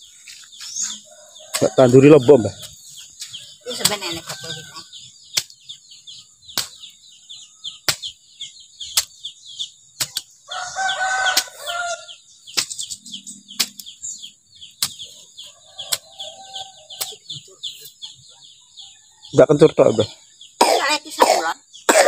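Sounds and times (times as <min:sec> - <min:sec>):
small birds chirping: 0:00.0 - 0:22.0.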